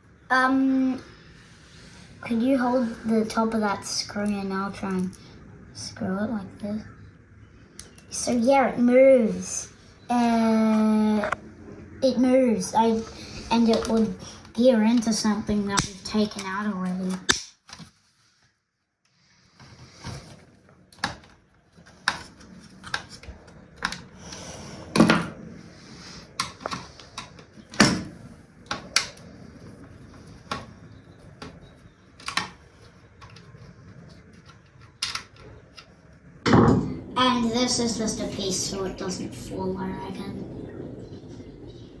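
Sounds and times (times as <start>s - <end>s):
plastic and metal parts clicking: 32.2s - 32.6s, 34.1s - 35.9s.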